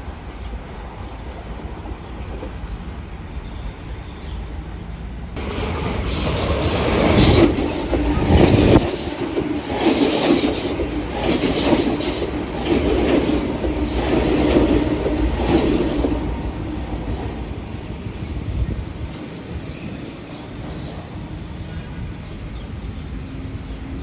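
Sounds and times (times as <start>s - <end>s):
electric train passing: 0.0s - 24.0s
wheels clattering on rails: 5.4s - 18.1s.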